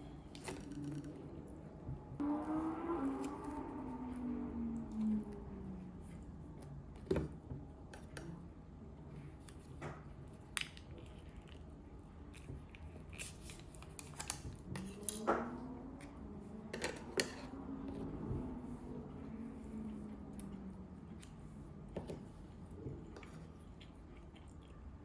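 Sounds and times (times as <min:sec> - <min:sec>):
faint low hum: 0:00.0 - 0:25.0.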